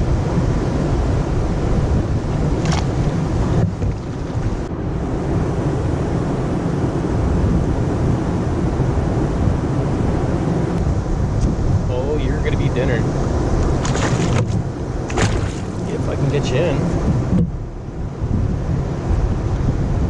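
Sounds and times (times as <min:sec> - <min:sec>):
wind buffeting microphone: 0:00.0 - 0:20.0
water rushing over falls: 0:13.6 - 0:16.9.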